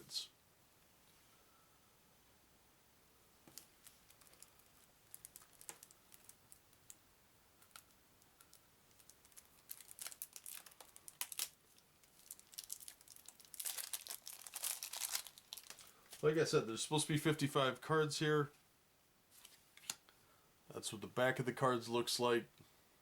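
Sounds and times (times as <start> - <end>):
plastic wrapping crinkling: 3.5 - 7.0, 7.6 - 16.2.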